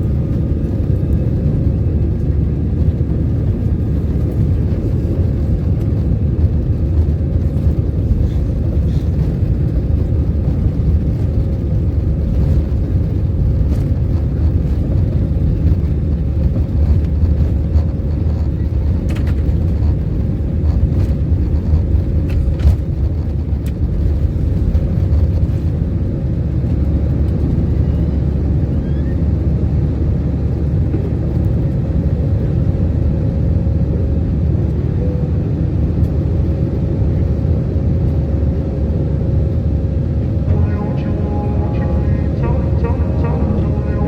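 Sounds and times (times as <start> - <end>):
jet engine rumble: 0.0 - 44.0
faint steady hum: 40.4 - 44.0.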